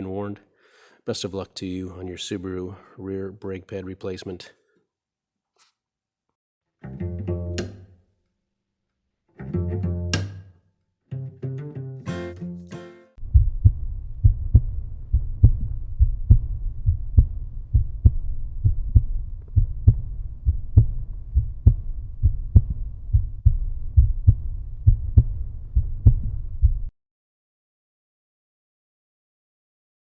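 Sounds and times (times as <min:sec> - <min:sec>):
deep bass music: 0:13.2 - 0:26.9.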